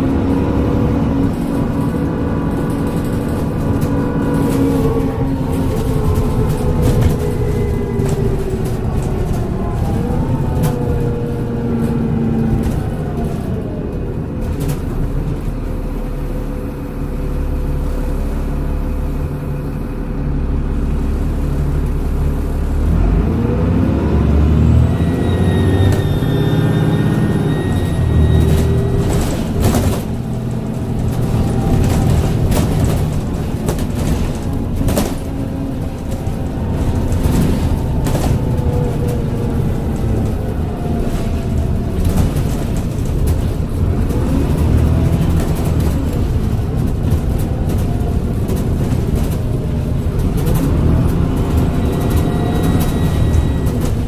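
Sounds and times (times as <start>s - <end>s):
rattles and clicks: 0.0s - 15.7s, 27.2s - 54.0s
bus engine and transmission whine: 0.0s - 54.0s.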